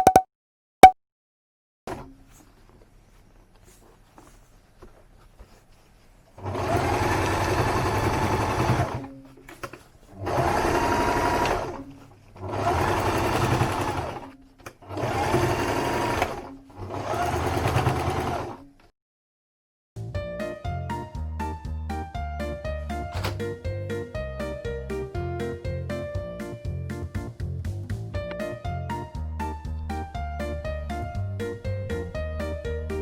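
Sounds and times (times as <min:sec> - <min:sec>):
sewing machine stitching: 0:06.4 - 0:18.6.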